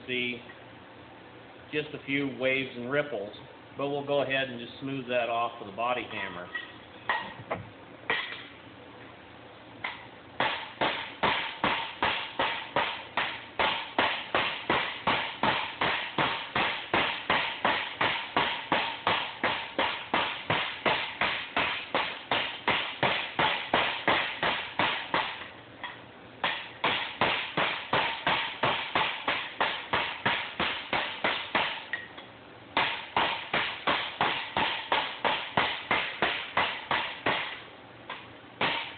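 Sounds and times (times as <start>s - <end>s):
hammer striking metal: 9.8s - 32.2s, 32.8s - 38.9s.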